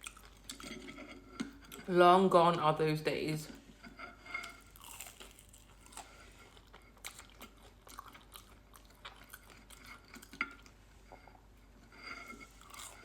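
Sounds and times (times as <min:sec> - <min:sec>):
person chewing food: 0:00.0 - 0:01.9, 0:04.3 - 0:11.5, 0:12.4 - 0:13.0.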